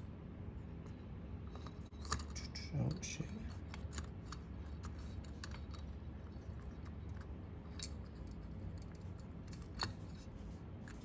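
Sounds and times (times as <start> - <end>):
steady low hum: 0.0 - 11.0
small metal parts clicking: 1.5 - 11.0.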